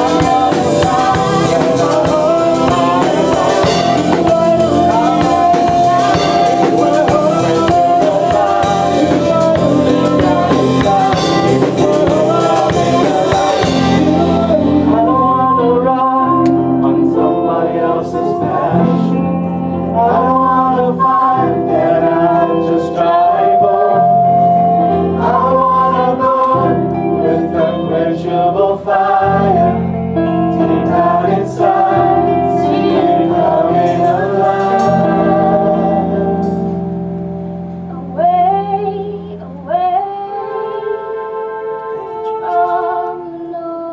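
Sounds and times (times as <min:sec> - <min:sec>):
drums and cymbals: 0:00.0 - 0:14.5
sustained instrumental chords: 0:00.0 - 0:43.5
group of singers: 0:00.0 - 0:43.9.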